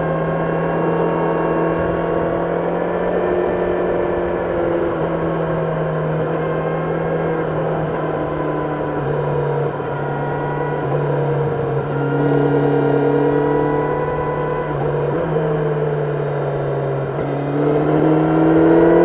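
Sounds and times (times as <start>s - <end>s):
motorcycle engine while riding: 0.0s - 19.0s.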